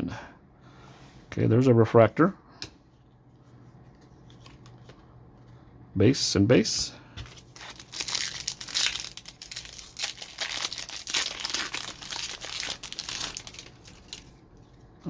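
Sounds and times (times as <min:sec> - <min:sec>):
foil wrapper crinkling: 0:07.3 - 0:14.8.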